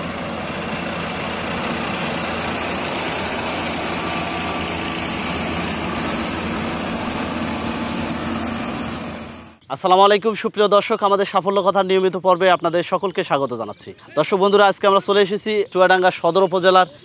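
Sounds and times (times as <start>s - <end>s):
diesel engine droning: 0.0s - 9.6s.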